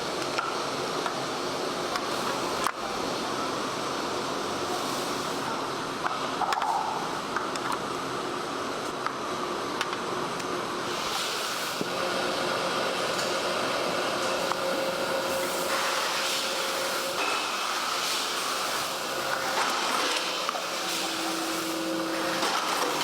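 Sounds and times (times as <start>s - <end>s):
machinery humming: 10.2s - 23.0s
machine hissing: 10.8s - 23.0s.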